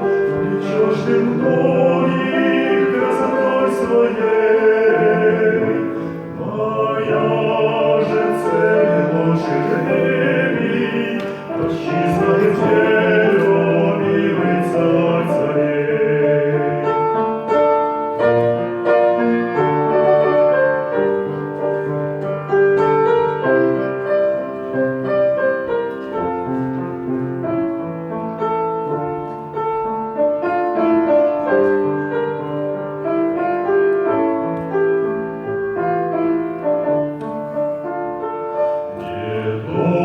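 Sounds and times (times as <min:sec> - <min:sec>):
piano playing chords and melody: 0:00.0 - 0:40.0
person singing slow song: 0:00.2 - 0:16.9.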